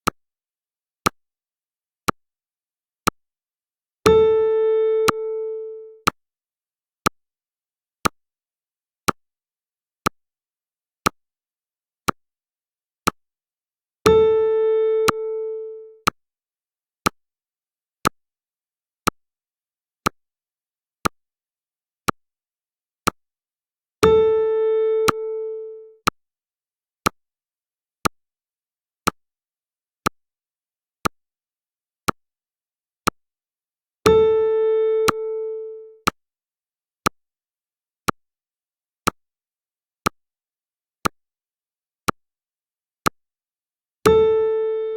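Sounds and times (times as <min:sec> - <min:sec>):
timer ticking: 0:05.0 - 0:05.2, 0:15.0 - 0:15.3, 0:25.0 - 0:25.3, 0:35.0 - 0:36.2
sharp electronic tick: 0:15.0 - 0:15.2, 0:35.0 - 0:35.2.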